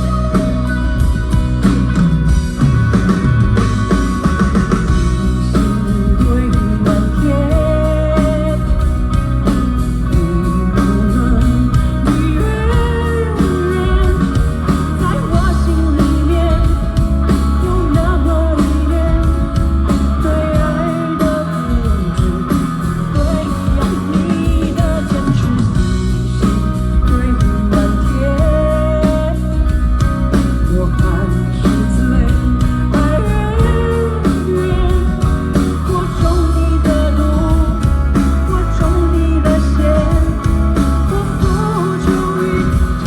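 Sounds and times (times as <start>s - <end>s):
person singing: 0.0s - 1.4s, 4.8s - 43.0s
guitar: 0.0s - 43.0s
steady drum beat: 0.0s - 43.0s.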